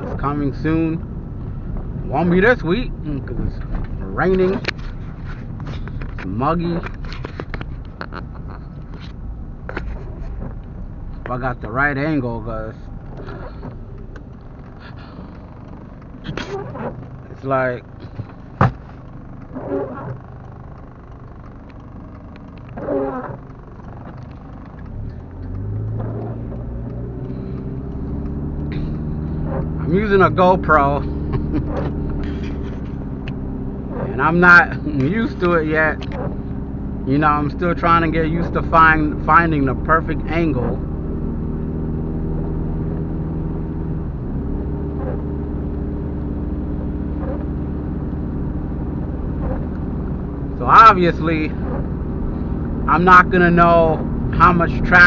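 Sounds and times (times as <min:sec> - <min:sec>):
car engine drone from inside: 0:00.0 - 0:55.0
road noise: 0:00.0 - 0:55.0.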